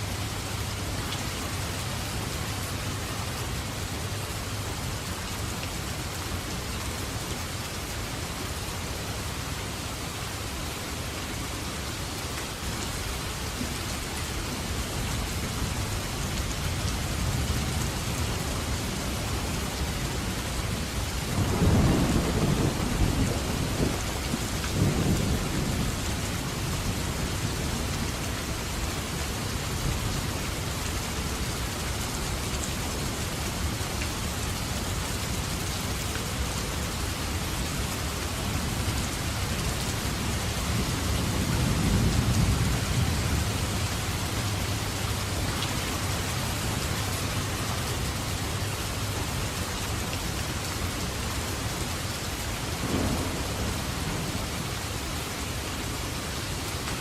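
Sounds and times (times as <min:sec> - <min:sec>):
steady rain falling: 0:00.0 - 0:57.0
thunder rolling: 0:52.8 - 0:54.6.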